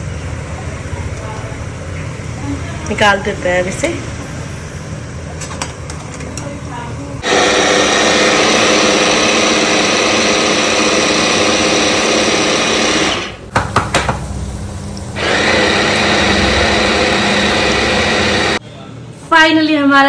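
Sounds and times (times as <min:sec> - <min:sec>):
mixer grinder motor running: 0:07.2 - 0:18.6.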